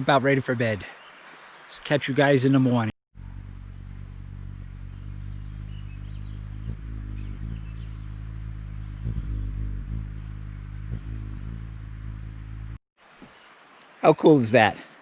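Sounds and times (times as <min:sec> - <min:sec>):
small birds chirping: 0:00.0 - 0:14.0
steady low hum: 0:03.2 - 0:12.8.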